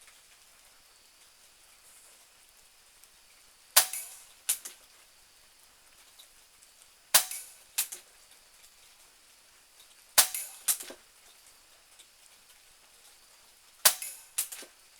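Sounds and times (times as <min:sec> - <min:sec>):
air pistol shots: 0:03.8 - 0:04.2, 0:07.2 - 0:07.9, 0:10.2 - 0:10.8, 0:13.9 - 0:14.6.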